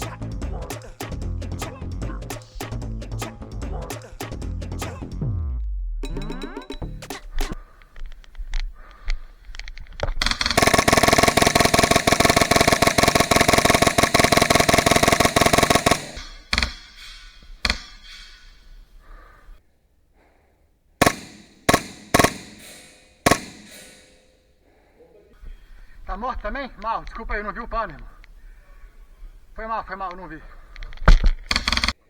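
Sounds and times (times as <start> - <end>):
airsoft rifle full-auto burst: 10.2 - 16.9, 21.0 - 24.2, 31.5 - 32.0
airsoft rifle single shots: 21.0 - 24.3.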